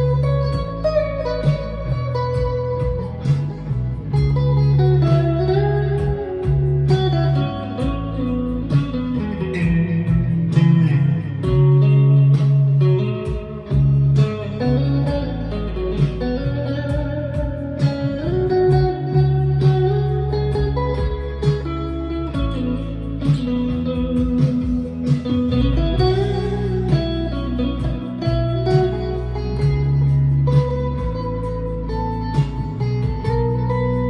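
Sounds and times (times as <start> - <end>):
clean electric guitar playing: 0.0 - 34.0.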